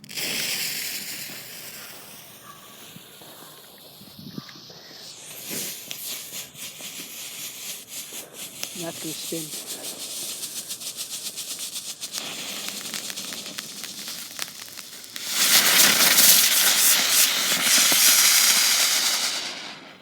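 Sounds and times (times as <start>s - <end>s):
firework hissing spray of sparks: 0.0s - 20.0s
fuse sputtering and crackling: 2.4s - 18.1s.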